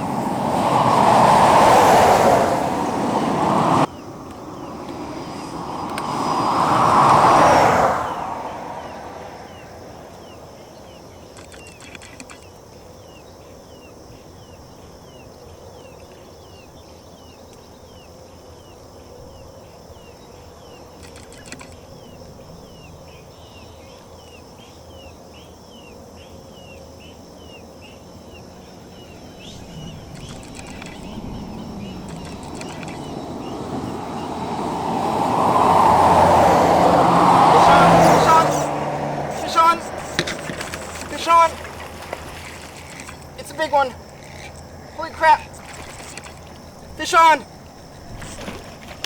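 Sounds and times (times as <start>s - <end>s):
sharp clicks: 11.3s - 12.5s, 21.0s - 21.8s, 30.1s - 31.1s, 32.0s - 33.0s.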